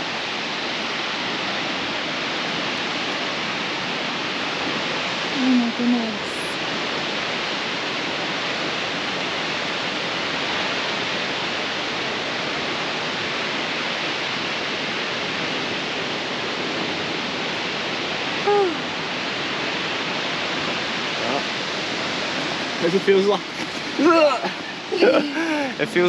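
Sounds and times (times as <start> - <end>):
hiss of falling water: 0.0 - 26.0.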